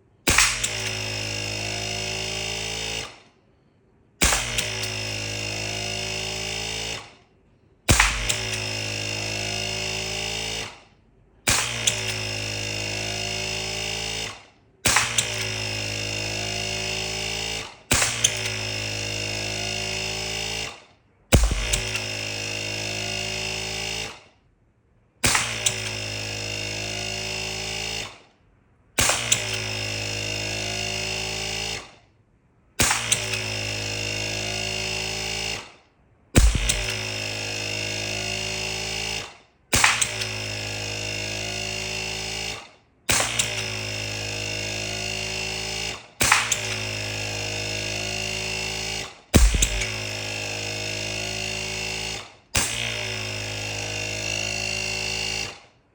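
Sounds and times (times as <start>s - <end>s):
airgun shots: 0.3s - 1.0s, 4.2s - 4.9s, 7.9s - 8.7s, 21.3s - 22.0s, 25.2s - 25.8s, 29.0s - 29.6s, 32.8s - 33.3s, 36.4s - 37.1s, 39.7s - 40.2s, 43.1s - 43.6s, 46.2s - 46.8s, 49.4s - 50.2s
steady buzzing hum: 7.7s - 9.9s, 21.3s - 23.5s, 36.4s - 38.6s, 49.4s - 52.2s.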